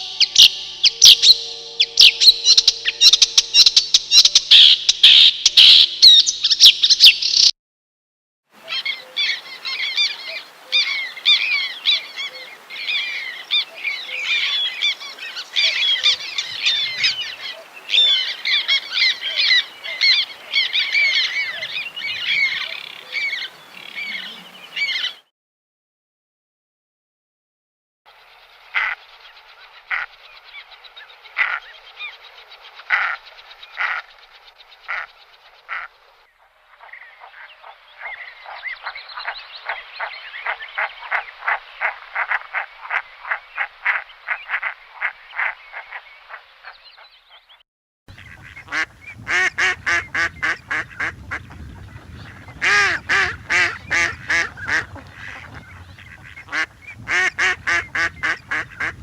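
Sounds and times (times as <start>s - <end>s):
geese or ducks honking: 0.0s - 6.3s, 8.7s - 25.2s, 28.7s - 29.0s, 31.4s - 31.8s, 32.8s - 34.2s, 34.8s - 35.1s, 35.7s - 35.9s, 48.1s - 59.0s.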